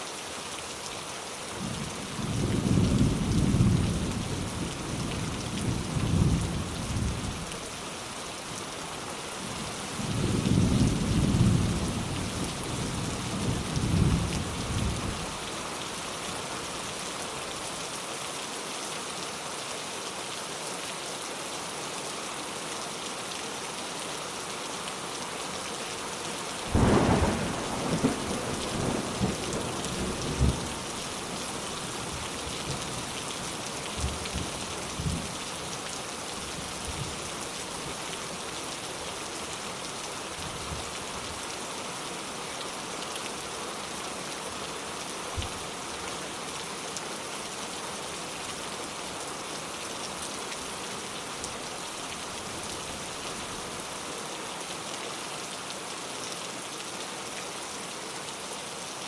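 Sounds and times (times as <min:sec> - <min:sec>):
steady rain falling: 0:00.0 - 0:59.0
thunder rumbling: 0:26.7 - 0:30.7.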